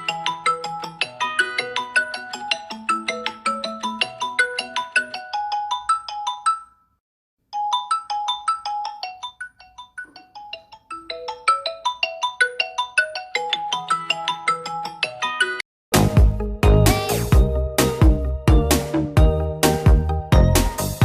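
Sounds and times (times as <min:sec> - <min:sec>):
marimba phone ringtone: 0:00.0 - 0:07.0, 0:07.6 - 0:15.6.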